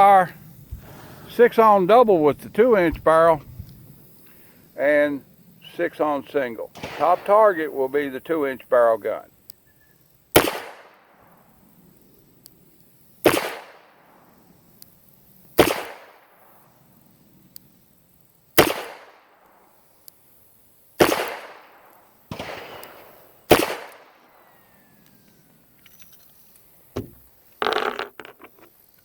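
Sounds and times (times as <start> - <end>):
quieter bang: 6.7 - 7.8, 27.0 - 27.3.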